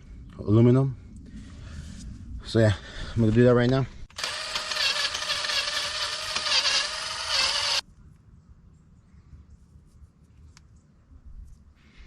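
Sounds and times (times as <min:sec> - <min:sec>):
power tool whining: 0:04.1 - 0:07.8.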